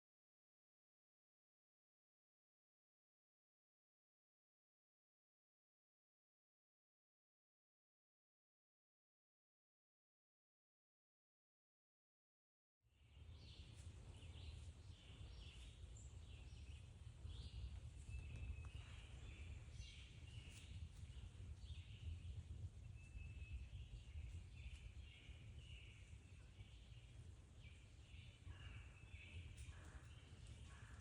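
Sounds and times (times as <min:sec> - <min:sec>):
birds chirping and whistling: 0:13.2 - 0:22.4, 0:23.0 - 0:31.0
steady low rumble: 0:13.2 - 0:31.0.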